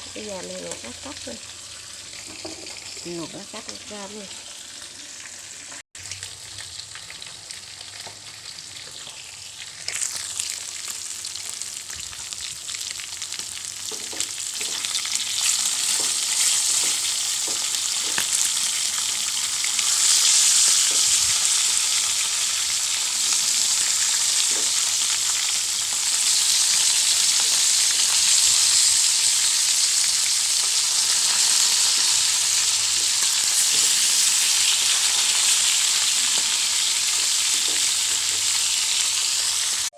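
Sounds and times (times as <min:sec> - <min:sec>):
fish sizzling in hot oil: 0:00.0 - 0:39.9.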